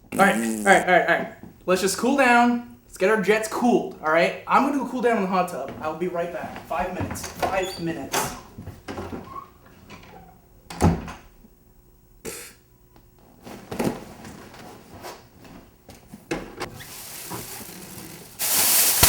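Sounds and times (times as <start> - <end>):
steady hiss: 17.0 - 19.0.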